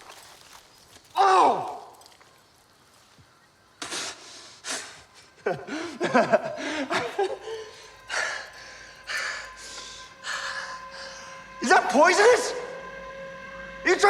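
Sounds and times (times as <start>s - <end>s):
person breathing hard and gasping: 3.8s - 6.0s, 6.6s - 11.3s.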